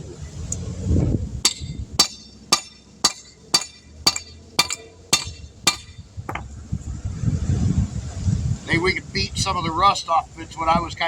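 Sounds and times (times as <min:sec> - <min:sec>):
hammer striking metal: 0:01.4 - 0:06.4.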